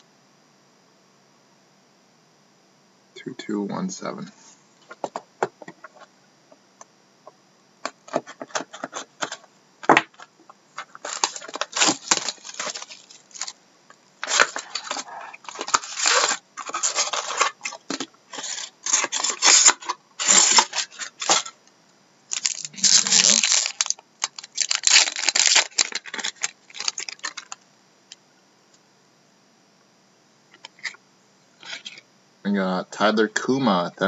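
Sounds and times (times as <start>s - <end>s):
card packs tearing and crinkling: 8.0s - 13.6s, 14.2s - 21.6s, 22.3s - 27.6s.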